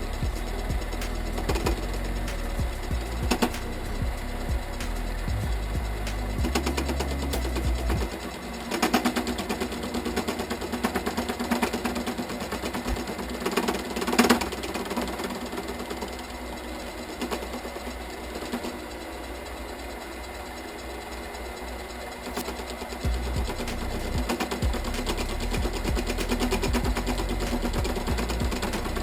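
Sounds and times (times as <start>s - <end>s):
metal lathe ticking rattle: 0.0s - 29.0s.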